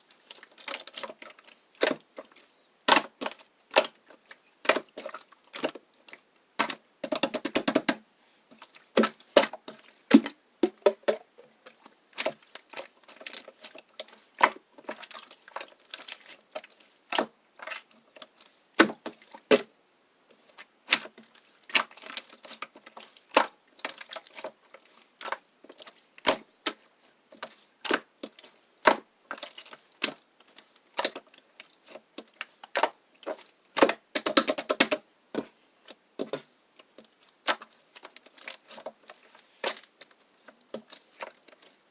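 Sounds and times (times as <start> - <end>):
slime clicking and popping: 33.8 - 35.0.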